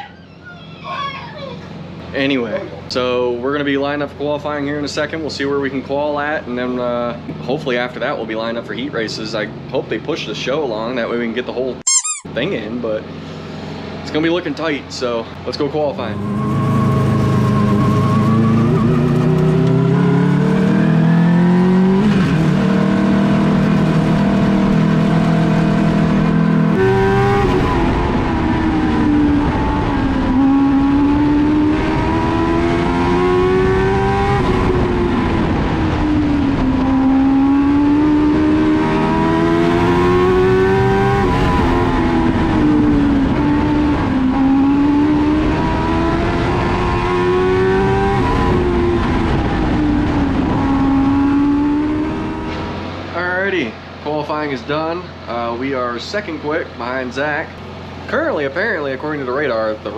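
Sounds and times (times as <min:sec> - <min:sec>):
race car engine at full throttle: 0:12.6 - 0:59.9.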